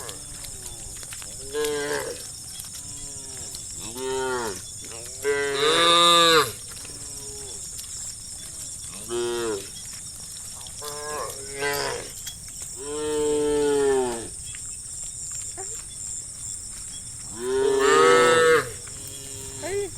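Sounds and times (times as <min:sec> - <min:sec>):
cows mooing: 0:01.4 - 0:07.6, 0:08.9 - 0:09.8, 0:10.8 - 0:12.2, 0:12.8 - 0:14.4, 0:17.3 - 0:19.9.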